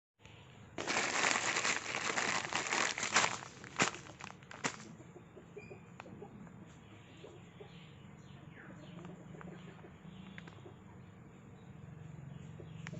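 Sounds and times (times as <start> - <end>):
plastic packaging crinkling: 0.8 - 4.9.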